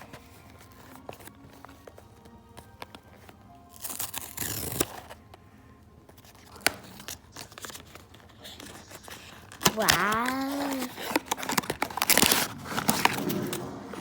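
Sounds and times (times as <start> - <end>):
packaging rustling: 0.0 - 5.4, 6.1 - 14.0
packaging ripping: 3.7 - 5.3, 6.2 - 14.0.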